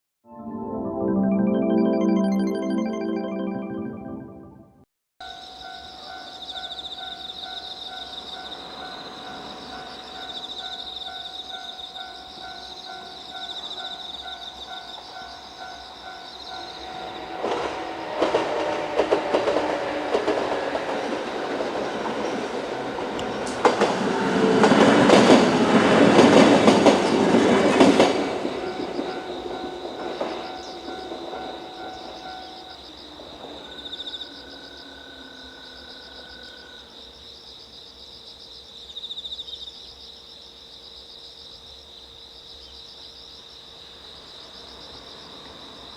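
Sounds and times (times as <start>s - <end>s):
level-crossing alarm bell: 5.2s - 18.3s, 28.2s - 33.0s
railcar wheels clicking over rail joints: 17.4s - 32.5s.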